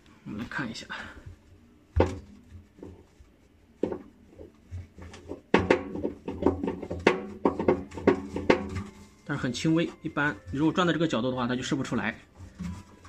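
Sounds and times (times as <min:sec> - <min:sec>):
washer drum knocking and rattling: 0:04.7 - 0:10.8.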